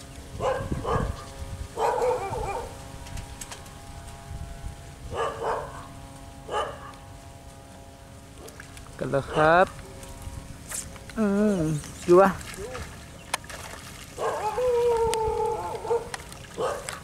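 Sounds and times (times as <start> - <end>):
dog barking: 0.4 - 1.1, 1.8 - 2.7, 5.2 - 5.8, 6.5 - 6.9, 14.2 - 14.8, 15.7 - 17.0.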